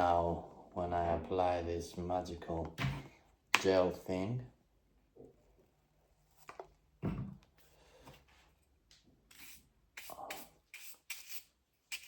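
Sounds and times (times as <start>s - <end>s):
scratchy rubbing strokes: 9.3s - 12.0s.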